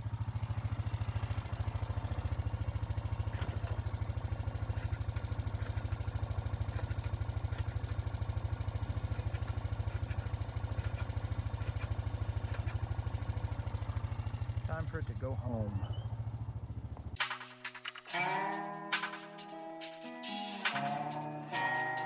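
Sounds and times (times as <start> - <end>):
atv engine idling: 0.0 - 18.0.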